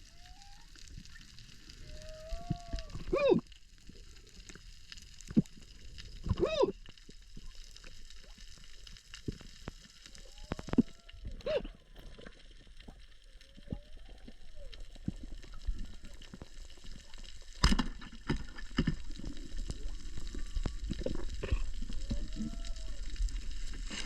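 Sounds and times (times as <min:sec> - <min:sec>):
underwater crackle of clicks: 0:00.0 - 0:24.0
muffled whooping tones: 0:01.8 - 0:03.4, 0:20.2 - 0:23.2.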